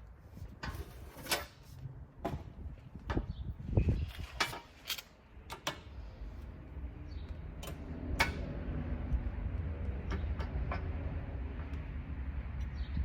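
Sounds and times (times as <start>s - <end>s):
metal bolts and washers clicking: 4.1s - 6.0s, 7.5s - 8.6s, 9.9s - 11.8s.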